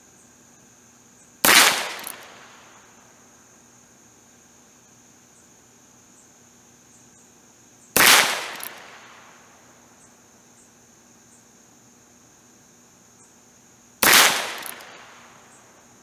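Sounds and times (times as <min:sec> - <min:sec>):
revolver gunshot: 0:01.4 - 0:02.6, 0:08.0 - 0:09.3, 0:14.0 - 0:15.4.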